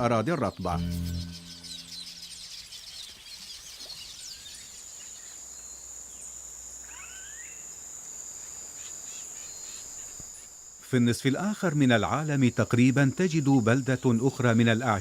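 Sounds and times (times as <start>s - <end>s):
insect trilling: 6.8s - 7.7s.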